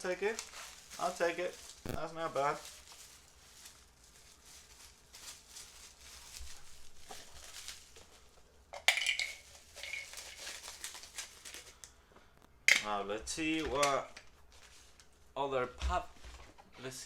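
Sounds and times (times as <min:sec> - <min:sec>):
packaging clicks and rustles: 0:00.2 - 0:08.3, 0:09.3 - 0:12.5.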